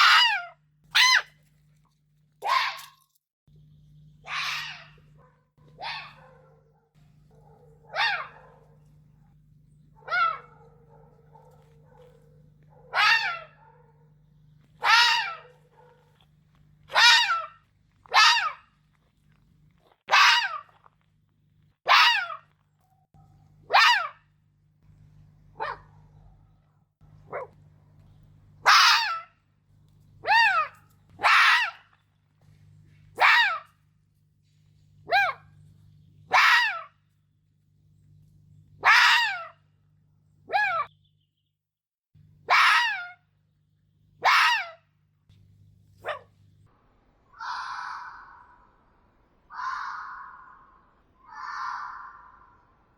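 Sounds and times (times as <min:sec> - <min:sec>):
fox barking: 0:00.0 - 0:01.4, 0:02.4 - 0:03.0, 0:04.2 - 0:18.8, 0:20.1 - 0:20.9, 0:21.8 - 0:24.3, 0:25.5 - 0:27.6, 0:28.6 - 0:29.4, 0:30.2 - 0:32.0, 0:33.1 - 0:33.8, 0:35.0 - 0:35.6, 0:36.3 - 0:37.0, 0:38.8 - 0:39.6, 0:40.4 - 0:40.9, 0:42.4 - 0:43.2, 0:44.2 - 0:44.8, 0:46.0 - 0:46.4, 0:49.5 - 0:52.9.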